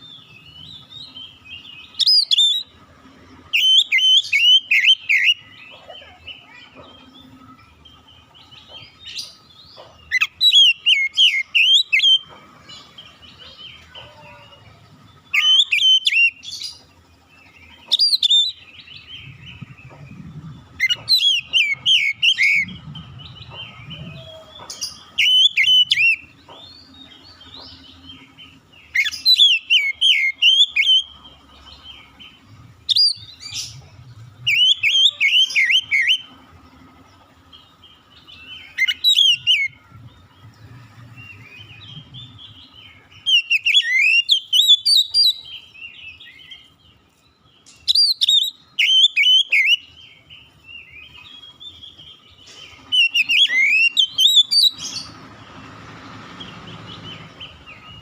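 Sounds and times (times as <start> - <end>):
bird singing whistled phrases: 0.1 - 2.7, 3.5 - 5.5, 10.1 - 12.3, 15.2 - 16.4, 17.6 - 19.6, 20.8 - 26.3, 28.9 - 31.1, 32.9 - 33.8, 34.5 - 36.3, 38.4 - 39.8, 43.2 - 46.6, 47.9 - 50.0, 52.8 - 55.2.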